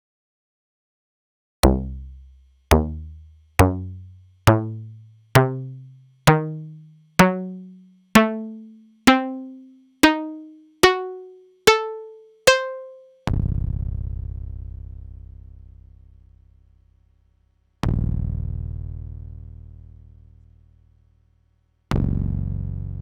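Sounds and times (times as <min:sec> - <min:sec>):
synthesizer plucked bass notes: 0:01.6 - 0:13.6.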